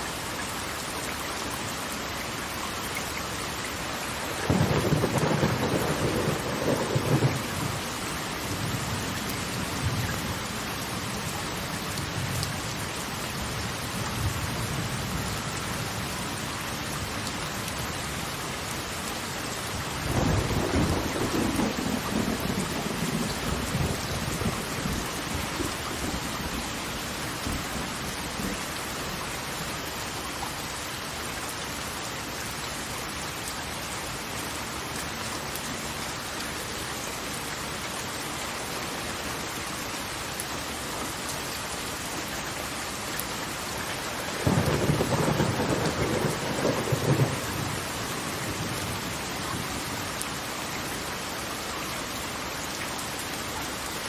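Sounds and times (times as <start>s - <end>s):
rush of falling water: 0.0s - 54.0s.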